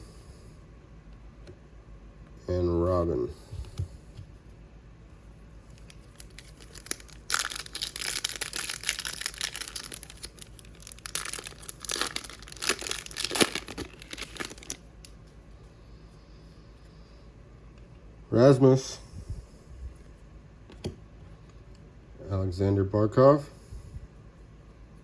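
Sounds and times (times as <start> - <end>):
wrapper tearing and crinkling: 5.7 - 14.9.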